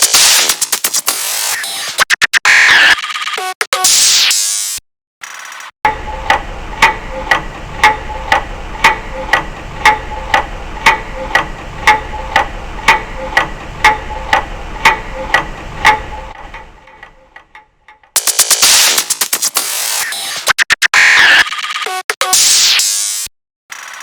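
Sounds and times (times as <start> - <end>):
clock ticking: 5.2 - 21.1
low steady hum: 5.9 - 17.6.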